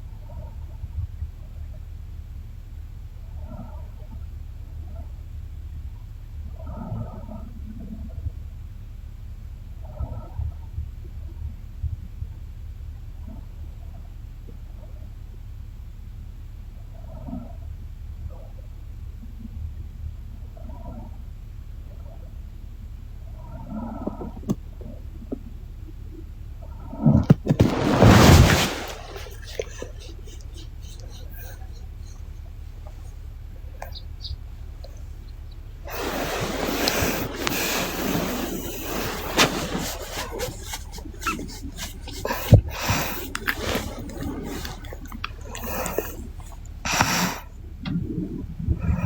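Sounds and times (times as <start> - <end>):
faint breathing: 27.4 - 49.0.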